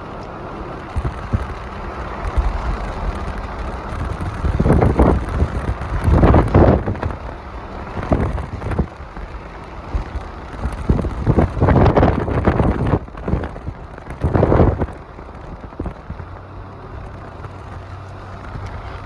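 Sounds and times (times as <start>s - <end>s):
wind buffeting microphone: 0.0s - 19.0s.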